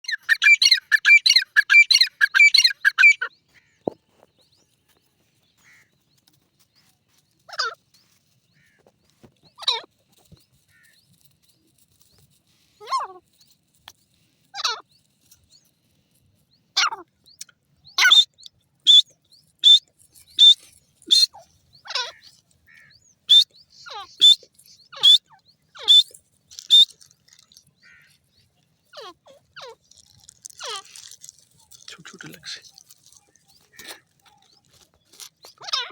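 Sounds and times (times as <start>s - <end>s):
francolin calling: 0.0s - 4.0s, 16.8s - 35.9s.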